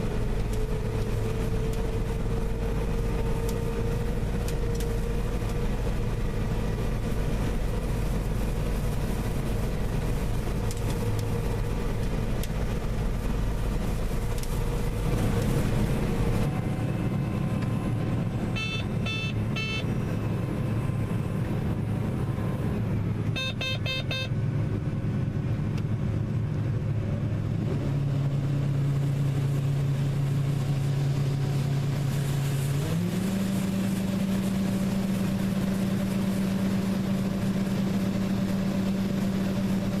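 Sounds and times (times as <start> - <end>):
harvester engine humming: 0.0 - 40.0
short electronic beeps: 18.5 - 19.9, 23.3 - 24.3.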